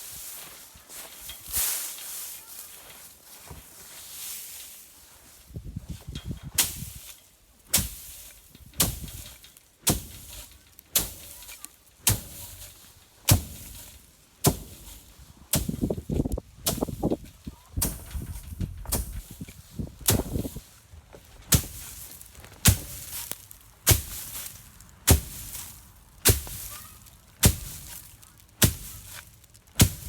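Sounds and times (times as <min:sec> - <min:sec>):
straw rustling: 0:00.0 - 0:30.0
tool whacking wheat: 0:06.4 - 0:30.0.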